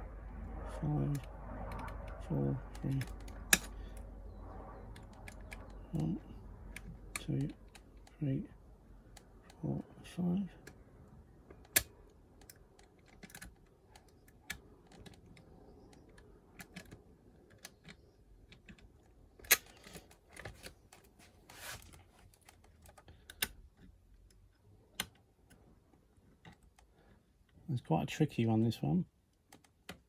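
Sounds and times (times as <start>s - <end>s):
lock pick clicking: 3.0s - 3.8s, 19.4s - 20.1s.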